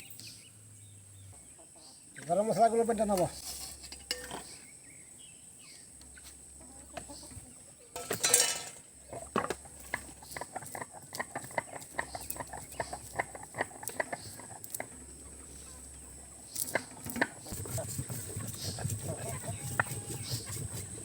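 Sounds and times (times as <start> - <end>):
spices ground on a stone: 17.5 - 21.0.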